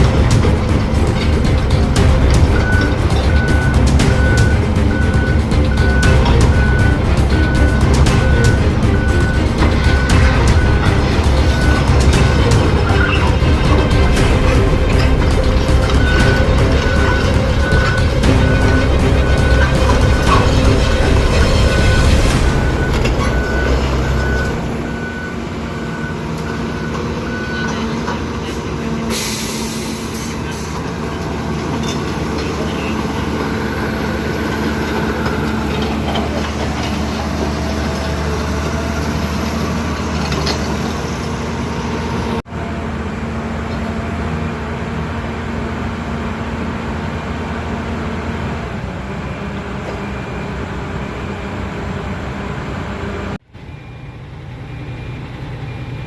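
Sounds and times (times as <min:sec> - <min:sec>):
high beeping: 0:00.0 - 0:28.0
excavator diesel engine running: 0:00.0 - 0:56.0.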